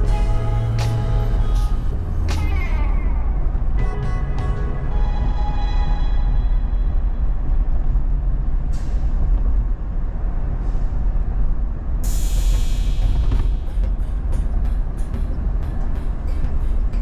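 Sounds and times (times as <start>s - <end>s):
car road and engine rumble: 0.0s - 17.0s
short hiss: 12.0s - 13.3s.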